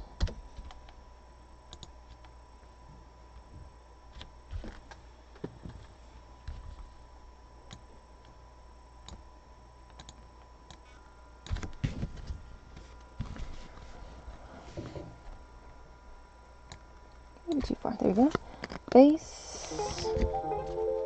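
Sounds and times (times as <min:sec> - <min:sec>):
keyboard and mouse clicks: 0:09.9 - 0:10.8.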